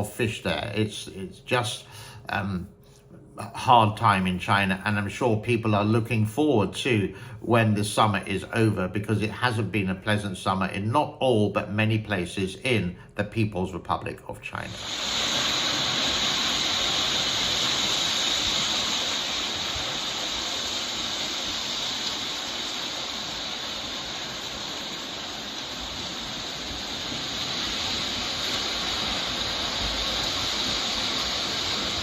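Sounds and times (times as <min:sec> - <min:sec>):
floodwater rushing: 0:14.7 - 0:32.0.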